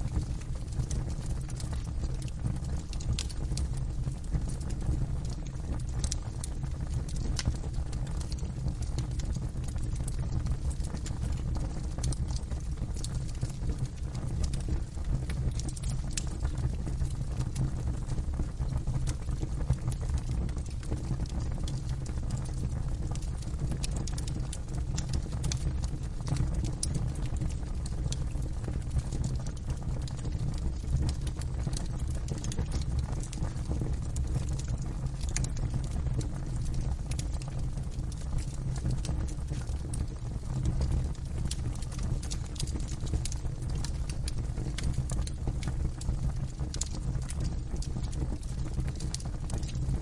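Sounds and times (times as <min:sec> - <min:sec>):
fire crackling and popping: 0:00.0 - 0:50.0
low rumble of fire: 0:00.0 - 0:50.0.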